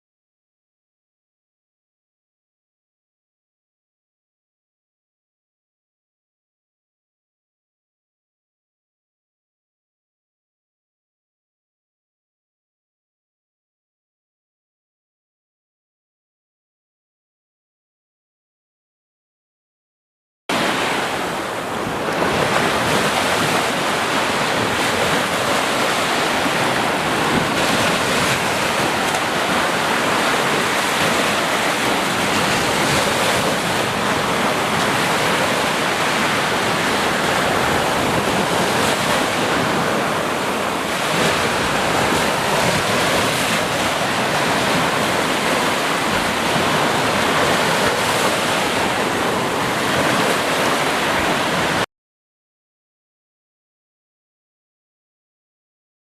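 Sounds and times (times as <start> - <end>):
ocean surf washing onto shore: 20.5 - 51.9.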